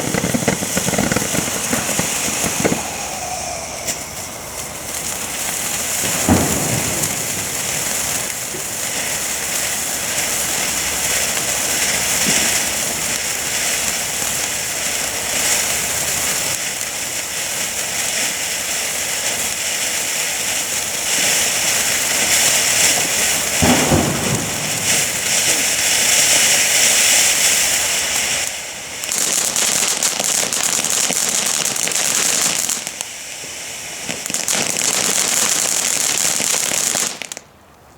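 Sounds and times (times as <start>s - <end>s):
low thumps: 0.0s - 5.4s
firework fountain hiss and crackle: 0.0s - 37.9s.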